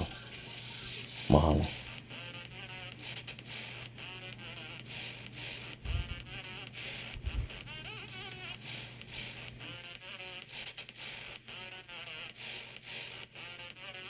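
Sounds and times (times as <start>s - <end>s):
steady low hum: 0.0s - 9.8s
dull thumps: 5.9s - 6.2s, 7.1s - 7.6s.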